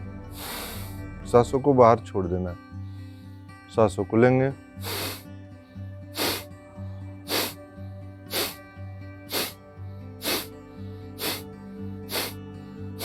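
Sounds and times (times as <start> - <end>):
background music: 0.0 - 13.0
forceful nasal exhalations: 0.3 - 1.0, 4.8 - 5.3, 6.1 - 6.6, 7.2 - 7.7, 8.3 - 8.7, 9.3 - 9.6, 10.2 - 10.6, 11.2 - 12.4.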